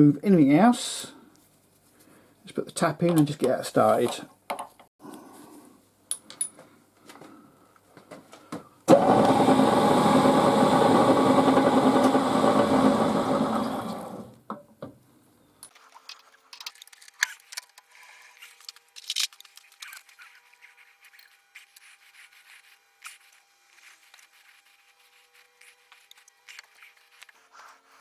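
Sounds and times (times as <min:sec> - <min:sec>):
electric machine motor running: 0:08.9 - 0:14.3.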